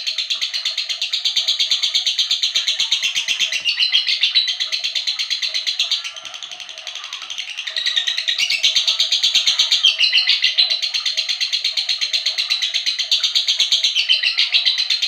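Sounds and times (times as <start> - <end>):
lovebird chirping: 0.0 - 6.4, 7.0 - 11.8.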